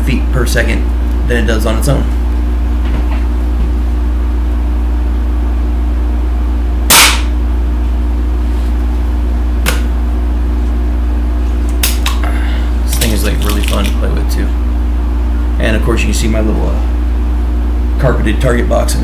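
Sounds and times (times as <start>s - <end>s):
low electrical hum: 0.0s - 19.0s
pellet pistol shot: 6.9s - 7.4s.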